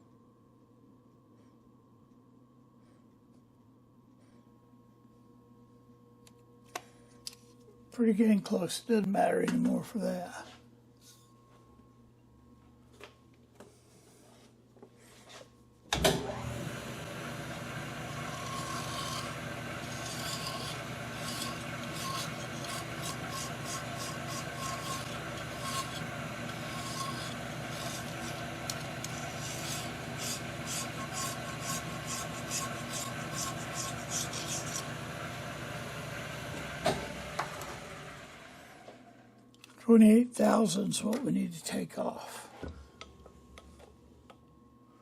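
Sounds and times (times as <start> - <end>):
lathe gear whine: 16.0 - 39.2
tool scraping metal: 18.0 - 35.1.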